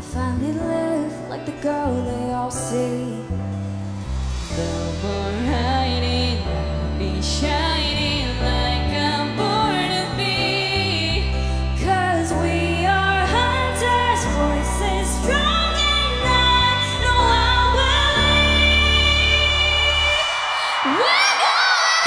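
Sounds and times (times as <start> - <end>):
heavy steady bass: 3.3 - 20.2.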